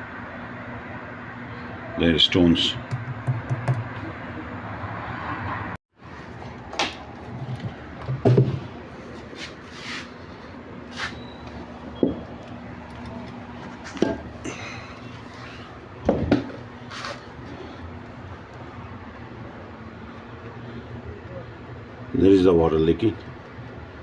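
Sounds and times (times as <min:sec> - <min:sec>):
low steady hum: 0:06.0 - 0:24.0.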